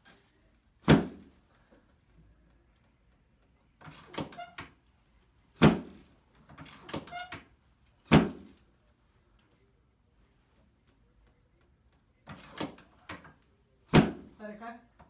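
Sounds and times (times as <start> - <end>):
treatment table thumps: 0.8 - 1.3, 5.6 - 6.0, 8.1 - 8.6, 13.9 - 14.4
table creaking and squeaking: 3.8 - 4.9, 5.7 - 8.3.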